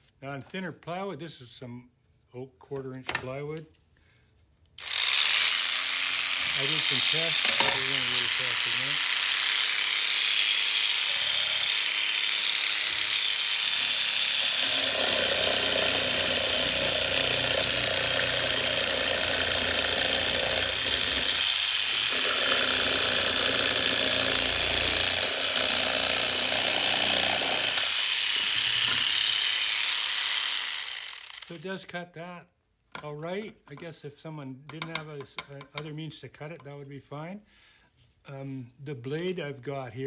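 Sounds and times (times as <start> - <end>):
rotary tool jig saw rattling: 4.8 - 31.6
saw cutting into plywood: 4.8 - 31.6.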